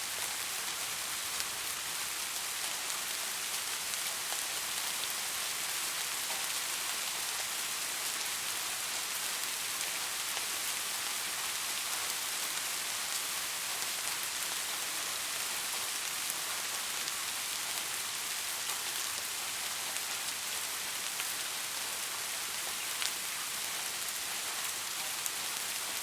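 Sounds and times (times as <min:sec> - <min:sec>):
steady rain falling: 0:00.0 - 0:26.0.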